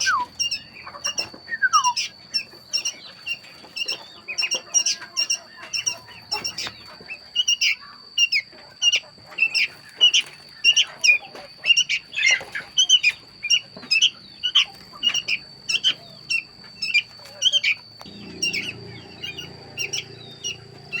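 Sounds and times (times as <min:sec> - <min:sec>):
small animals squeaking: 0:00.0 - 0:21.0
steady high whine: 0:13.0 - 0:21.0
low hum: 0:18.0 - 0:21.0.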